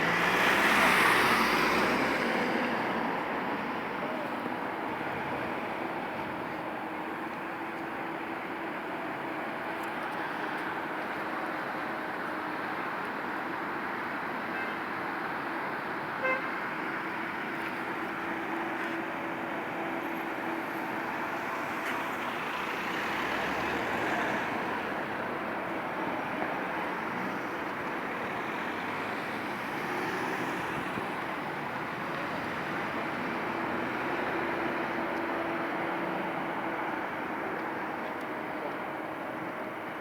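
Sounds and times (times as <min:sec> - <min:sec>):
cars driving past: 0:00.0 - 0:03.5, 0:21.1 - 0:38.7.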